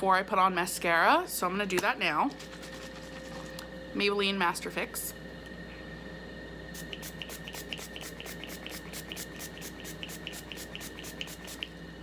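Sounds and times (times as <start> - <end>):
spray bottle hissing: 6.7 - 11.7.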